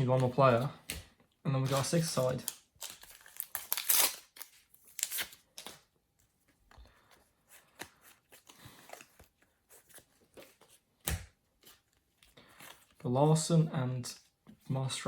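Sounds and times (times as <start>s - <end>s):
foil packet crinkling: 1.7s - 5.8s.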